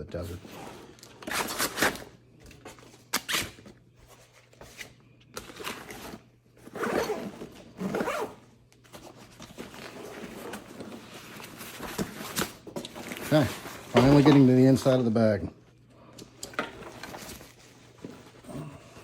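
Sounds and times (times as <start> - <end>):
backpack zippers pulled: 6.7 - 8.4
nylon fabric rustling: 6.8 - 8.4.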